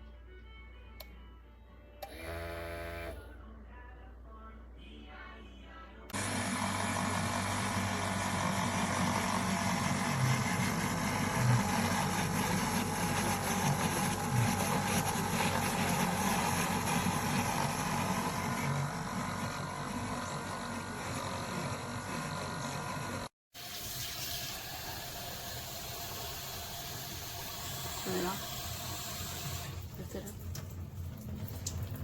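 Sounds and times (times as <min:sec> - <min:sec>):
milk frother whirring: 0:02.0 - 0:03.2, 0:06.1 - 0:23.3, 0:23.9 - 0:29.9.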